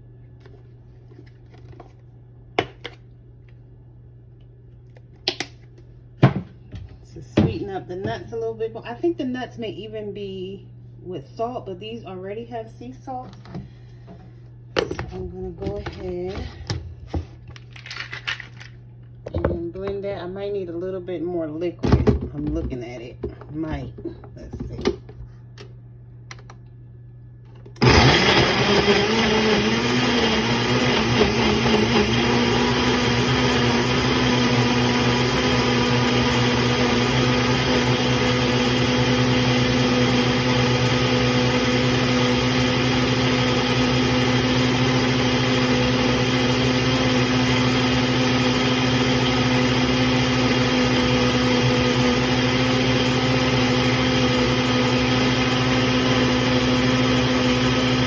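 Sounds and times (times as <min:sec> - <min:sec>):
blender running: 0:27.7 - 0:58.0.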